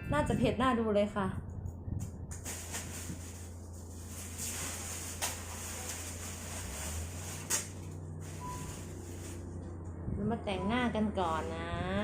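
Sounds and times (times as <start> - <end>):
low hum: 0.0 - 12.0.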